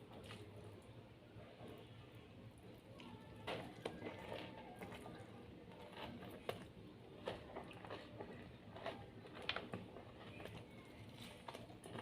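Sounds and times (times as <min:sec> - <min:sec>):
person chewing food: 0:03.0 - 0:12.0.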